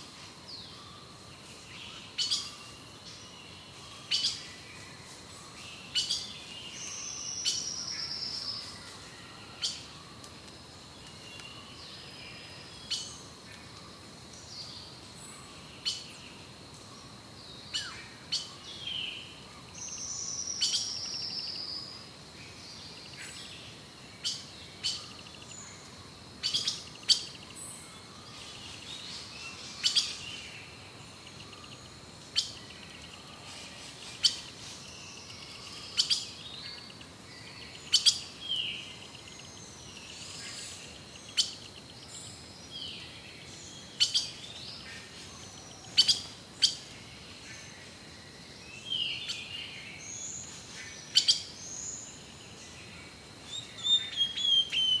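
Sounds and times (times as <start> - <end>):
birds chirping and calling: 1.9 - 3.2, 5.8 - 8.6, 31.2 - 41.8, 53.5 - 55.0.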